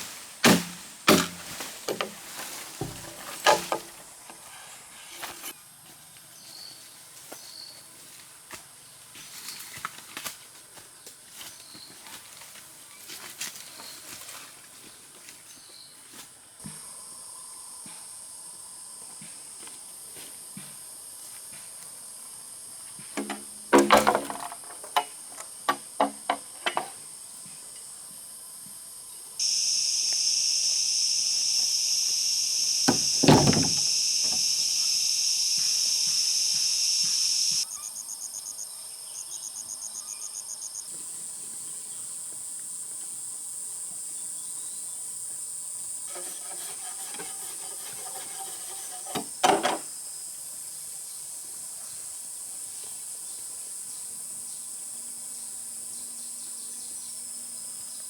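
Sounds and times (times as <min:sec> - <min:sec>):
dull knocks: 0:02.8 - 0:03.9, 0:32.9 - 0:34.5
insects shrilling: 0:29.4 - 0:50.4.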